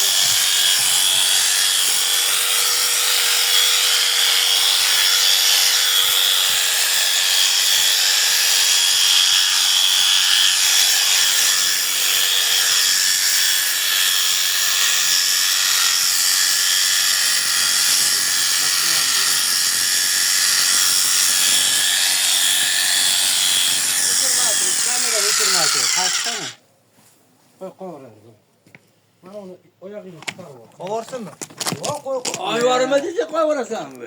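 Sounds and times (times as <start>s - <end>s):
electric clippers buzzing: 0.0s - 26.6s.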